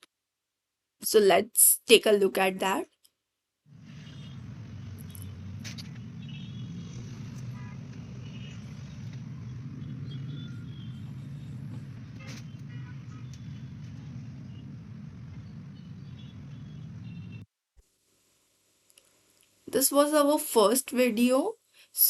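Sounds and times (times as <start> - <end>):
low outdoor rumble: 3.7 - 17.4.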